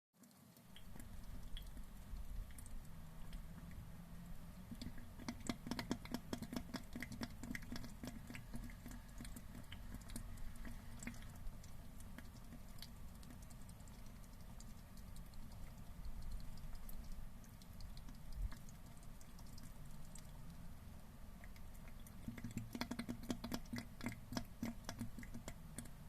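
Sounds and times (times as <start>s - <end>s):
crab froth crackling clicks: 0.2s - 26.0s.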